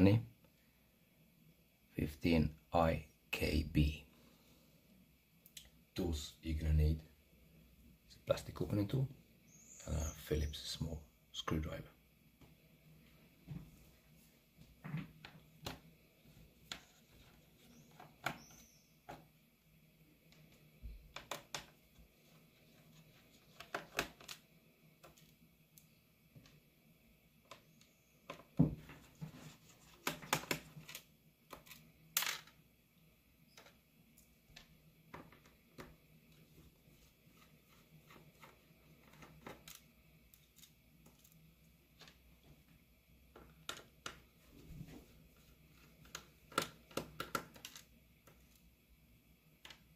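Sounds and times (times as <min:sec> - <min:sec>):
plastic laptop case handled: 0:23.0 - 0:24.4, 0:27.5 - 0:31.8, 0:45.8 - 0:47.9.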